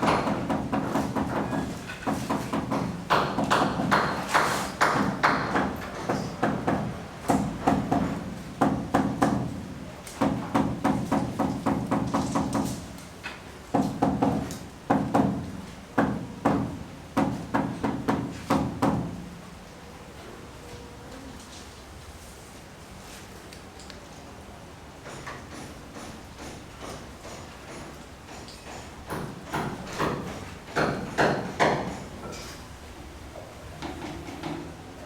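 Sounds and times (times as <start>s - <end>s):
rapid hammering: 0.0s - 9.6s, 10.2s - 12.8s, 13.7s - 19.2s, 25.1s - 32.1s.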